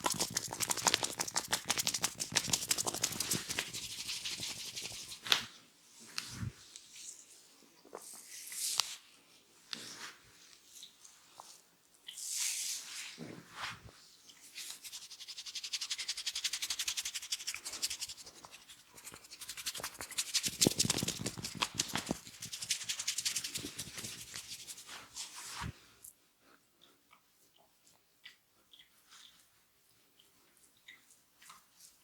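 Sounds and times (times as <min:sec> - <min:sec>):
fingers scratching hair and scalp: 0:00.0 - 0:05.4, 0:14.6 - 0:25.2.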